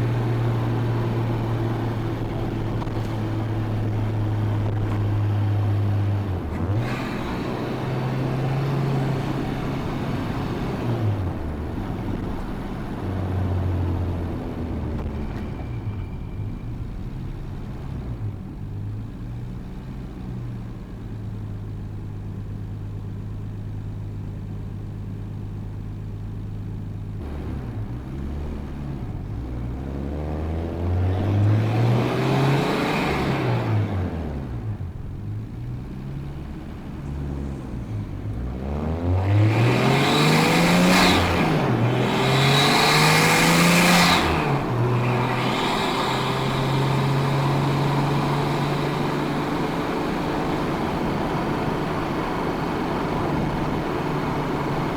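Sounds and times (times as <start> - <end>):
car engine revving while driving: 0.0 - 15.6, 27.2 - 54.9.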